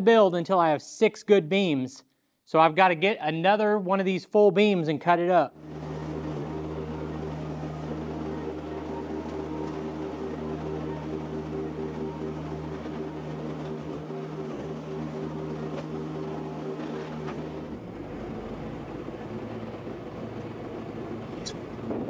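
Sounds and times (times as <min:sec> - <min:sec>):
engine running: 0:05.5 - 0:22.0.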